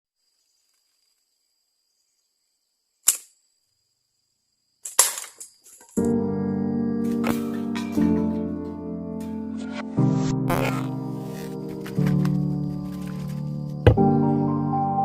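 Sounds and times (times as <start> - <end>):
music: 6.0 - 15.0.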